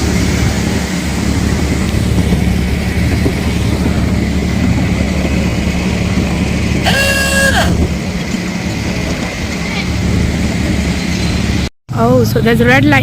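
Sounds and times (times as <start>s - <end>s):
train rumbling: 0.0s - 13.0s
train whistle blast: 6.8s - 7.8s.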